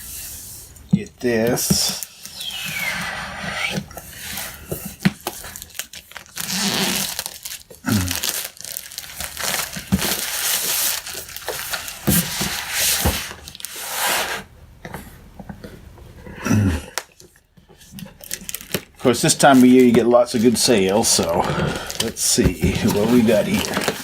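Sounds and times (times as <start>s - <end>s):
packaging crinkling and rustling: 3.7s - 13.9s, 17.0s - 24.0s
boxes knocking on surface: 22.4s - 24.0s.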